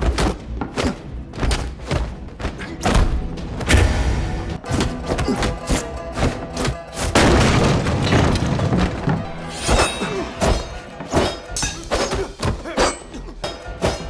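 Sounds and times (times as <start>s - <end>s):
punch and body impact effects: 0.0s - 7.8s
film score music: 0.0s - 14.0s
heavy crash: 7.0s - 10.9s.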